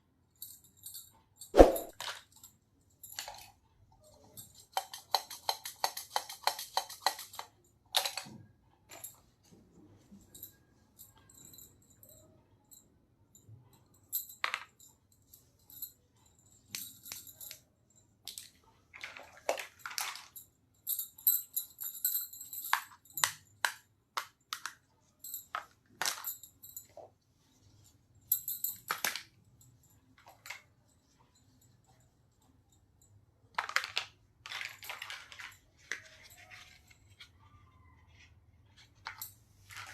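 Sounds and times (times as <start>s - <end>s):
plastic toy pieces clicking and rattling: 4.4s - 8.3s, 18.3s - 20.4s, 33.5s - 37.3s.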